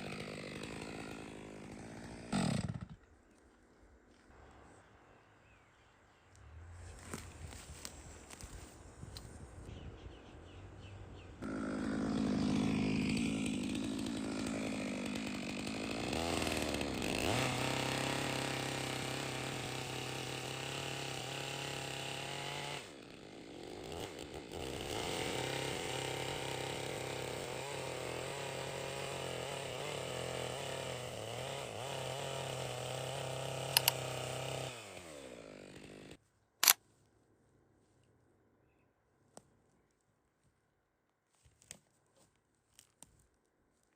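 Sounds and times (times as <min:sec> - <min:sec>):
chainsaw revving: 0:00.0 - 0:03.0, 0:11.4 - 0:36.8.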